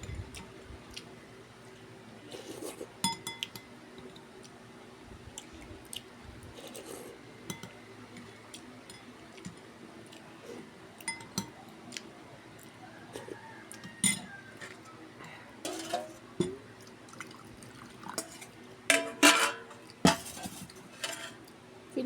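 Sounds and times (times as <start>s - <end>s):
faint steady hum: 0.0s - 22.0s
utensils clinking against dish: 14.0s - 14.8s, 15.6s - 16.6s, 18.2s - 21.4s.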